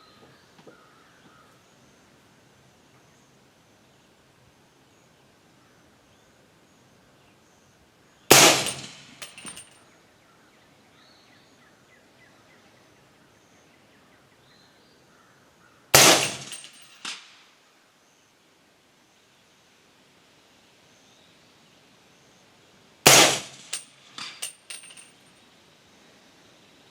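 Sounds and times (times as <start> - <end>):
suppressed rifle shots: 8.3 - 9.6, 16.0 - 17.2, 23.1 - 23.9.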